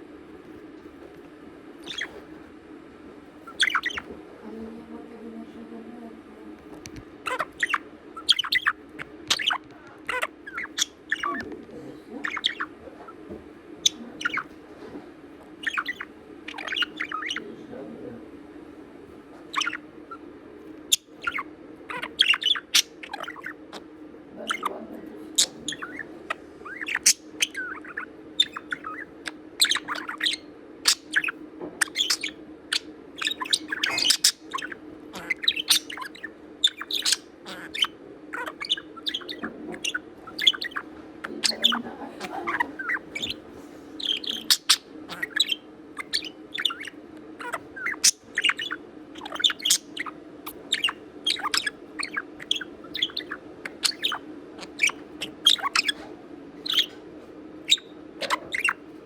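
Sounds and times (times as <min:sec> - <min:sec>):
budgerigar chattering: 0:01.8 - 0:02.2, 0:03.5 - 0:04.1, 0:07.2 - 0:11.5, 0:12.2 - 0:13.2, 0:13.8 - 0:14.5, 0:15.6 - 0:17.6, 0:19.5 - 0:20.2, 0:20.8 - 0:43.4, 0:44.0 - 0:56.0, 0:56.6 - 0:57.0, 0:57.6 - 0:58.8.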